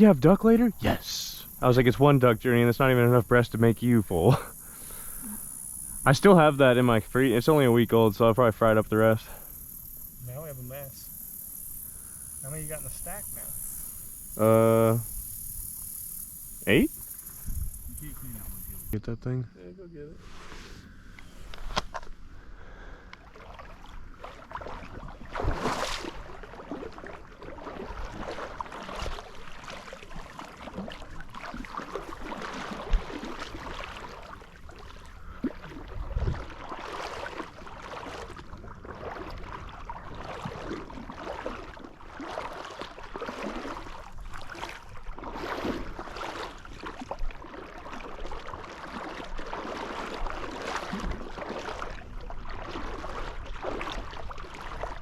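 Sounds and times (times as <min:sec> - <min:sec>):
splashing steps in water: 0:23.3 - 0:55.0.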